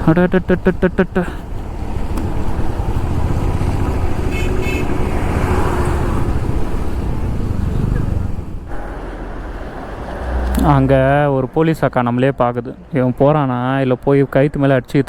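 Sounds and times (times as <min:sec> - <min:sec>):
motorcycle engine wind and road: 0:00.0 - 0:11.4
horn beeps: 0:04.1 - 0:06.0.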